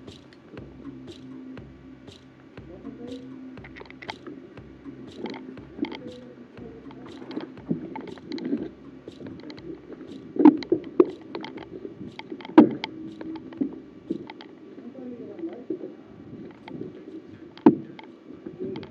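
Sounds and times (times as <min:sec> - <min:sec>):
irregular clicks and knocks: 0:00.0 - 0:14.5.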